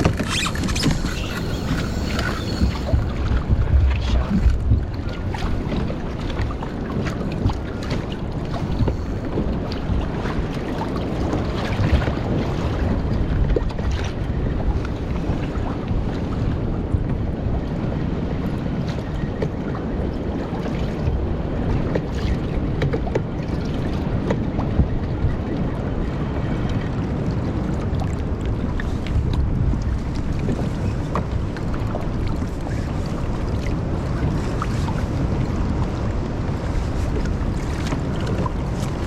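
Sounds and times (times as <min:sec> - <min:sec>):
knocks on boat: 0:00.0 - 0:06.0, 0:07.0 - 0:08.1, 0:22.7 - 0:23.3
water slapping boat hull: 0:00.0 - 0:39.0
wind buffeting microphone: 0:00.0 - 0:39.0.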